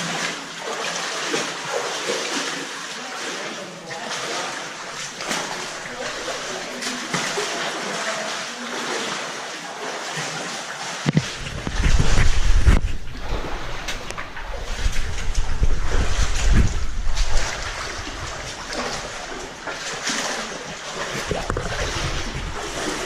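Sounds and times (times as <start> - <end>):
stream water rushing and splashing: 0.0 - 23.0.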